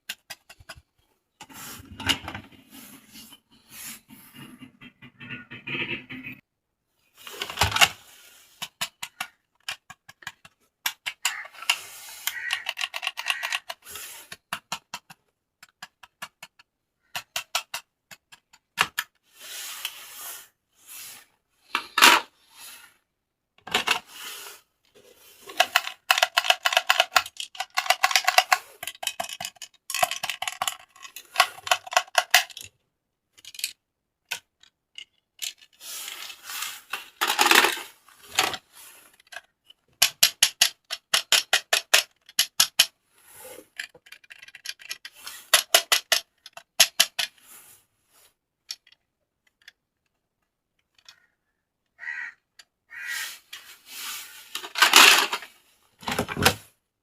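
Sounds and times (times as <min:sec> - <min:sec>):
plastic toys clicking and rattling: 0:00.0 - 0:00.9, 0:07.2 - 0:19.2, 0:23.6 - 0:24.2, 0:25.2 - 0:47.5, 0:48.6 - 0:51.4, 0:52.6 - 0:56.7.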